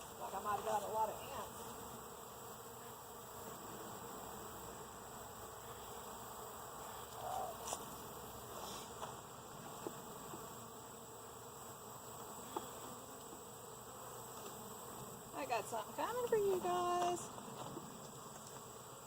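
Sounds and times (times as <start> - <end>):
bee buzzing close: 0.0 - 19.0
honeybees buzzing: 0.0 - 19.0
light clicks of hive parts: 12.1 - 13.5, 14.3 - 15.0, 16.2 - 18.8.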